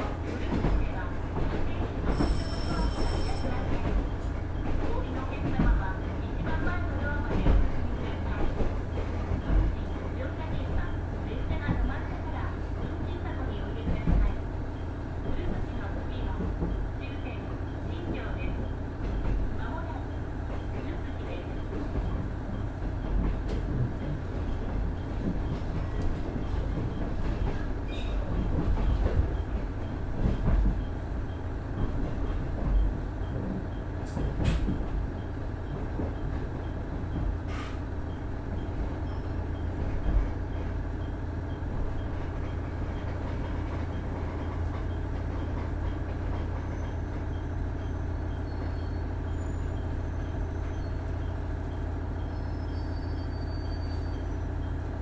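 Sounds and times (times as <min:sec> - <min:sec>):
train carriage jolts and knocks: 0:00.0 - 0:12.8, 0:21.6 - 0:37.8
diesel railcar engine droning: 0:00.0 - 0:55.0
train wheel and rail noise: 0:00.0 - 0:55.0.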